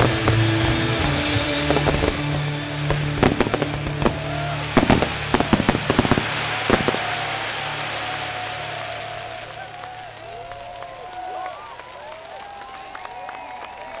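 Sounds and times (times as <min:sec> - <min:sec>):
fireworks bangs and crackles: 0:00.0 - 0:10.0.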